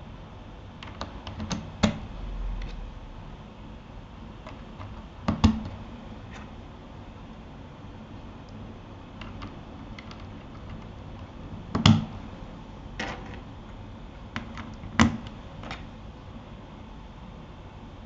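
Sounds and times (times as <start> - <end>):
keyboard clicks and knocks: 0.8 - 2.1, 4.4 - 6.5, 9.2 - 12.2, 14.3 - 15.9.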